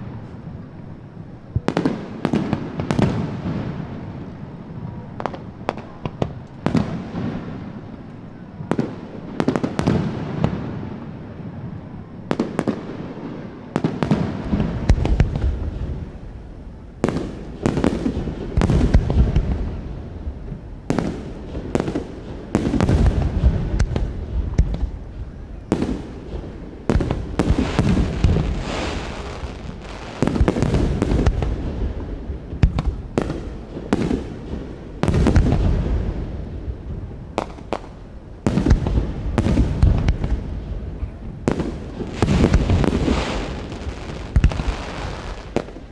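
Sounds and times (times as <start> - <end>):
firework shells bursting: 14.4 - 45.9.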